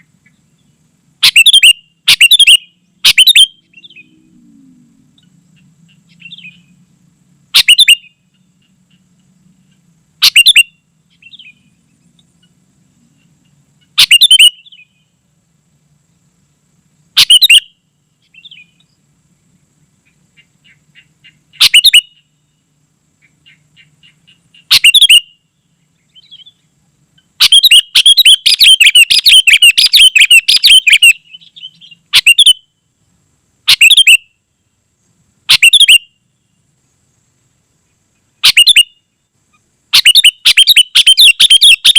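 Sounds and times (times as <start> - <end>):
bird singing bubbling phrases: 1.2 - 4.9.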